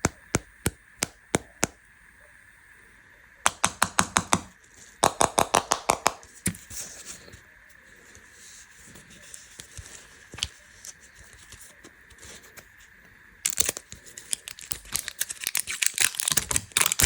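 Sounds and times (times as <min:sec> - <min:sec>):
candy packaging clicks: 0:03.5 - 0:06.3, 0:13.5 - 0:17.0.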